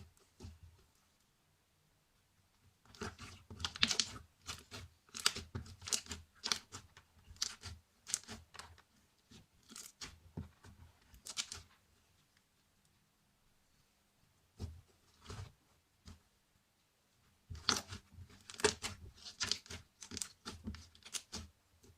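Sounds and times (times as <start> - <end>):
slime squelching: 2.8 - 11.8, 17.5 - 21.6.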